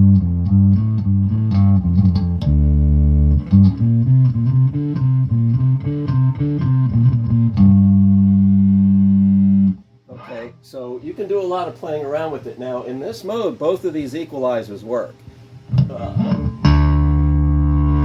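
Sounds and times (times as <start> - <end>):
fuzzy electric bass notes: 0.0 - 10.6, 15.6 - 18.0.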